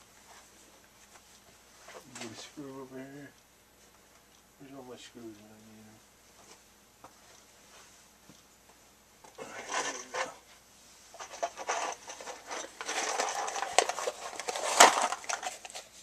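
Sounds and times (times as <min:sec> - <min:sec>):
rummaging through loose hardware: 0:09.4 - 0:10.4, 0:11.1 - 0:16.0.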